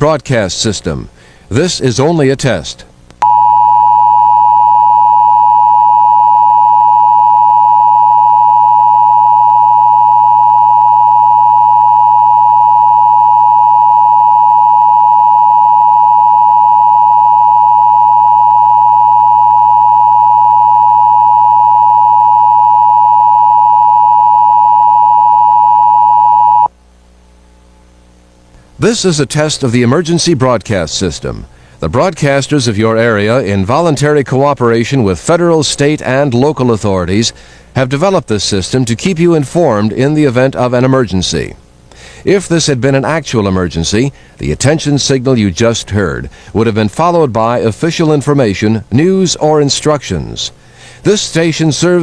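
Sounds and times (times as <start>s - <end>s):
loud steady electronic tone: 3.2s - 26.8s.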